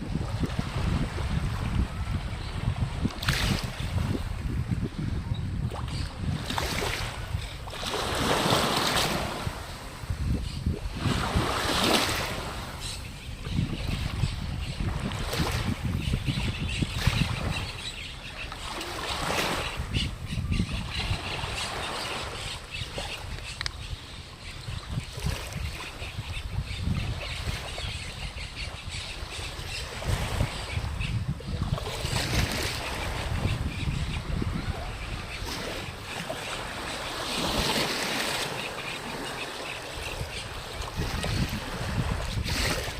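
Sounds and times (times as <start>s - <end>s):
waves washing in: 0.0s - 16.1s, 29.3s - 42.9s
wind buffeting microphone: 0.0s - 42.9s.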